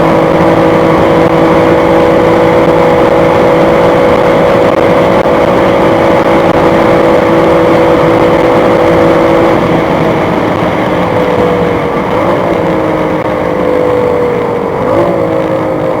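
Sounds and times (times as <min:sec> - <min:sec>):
car engine at high revs: 0:00.0 - 0:16.0.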